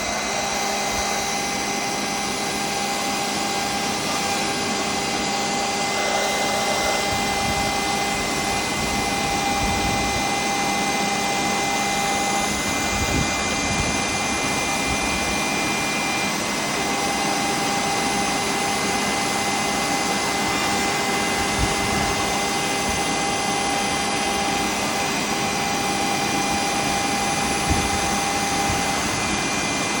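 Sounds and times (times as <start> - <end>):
milling machine spindle whining: 0.0 - 30.0.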